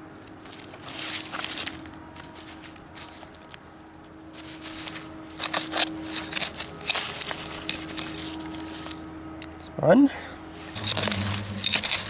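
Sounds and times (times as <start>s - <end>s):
digging knife scraping soil: 4.3s - 9.0s, 10.6s - 12.0s
rough scrapes and clicks: 4.4s - 9.0s, 10.6s - 12.0s.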